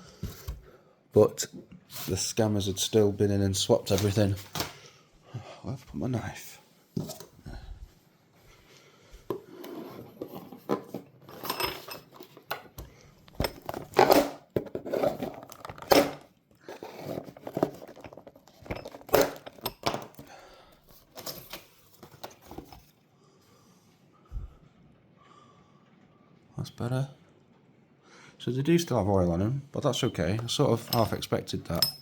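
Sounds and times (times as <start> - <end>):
packaging rustling and tearing: 13.6 - 19.6
metal bolts clinking: 17.5 - 20.3, 30.0 - 32.0.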